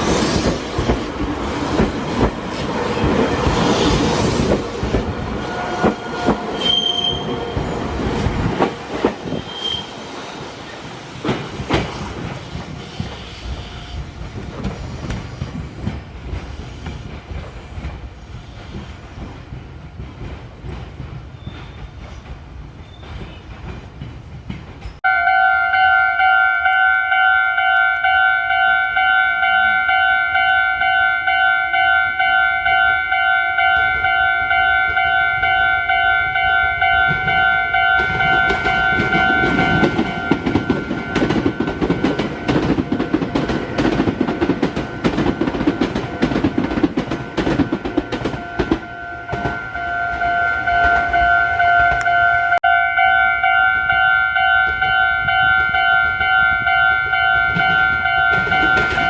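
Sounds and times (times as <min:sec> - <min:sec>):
train wheels clattering over rails: 0:00.0 - 0:25.0, 0:36.4 - 0:51.2, 0:54.6 - 0:59.0
level crossing warning bell: 0:25.0 - 0:43.3, 0:45.3 - 0:59.0.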